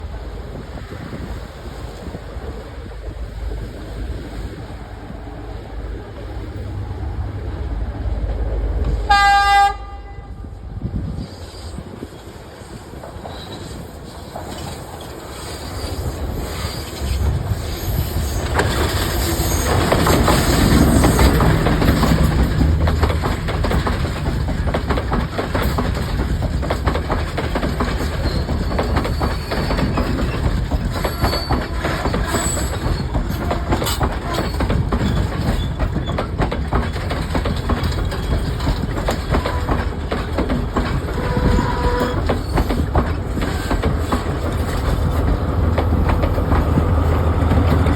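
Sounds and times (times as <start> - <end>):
train wheels clattering on rails: 11.1 - 47.9.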